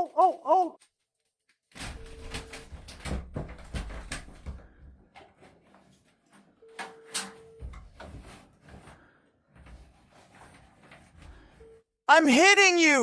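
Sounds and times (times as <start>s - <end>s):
cupboards and drawers opening and shutting: 1.7s - 6.4s, 7.4s - 11.5s.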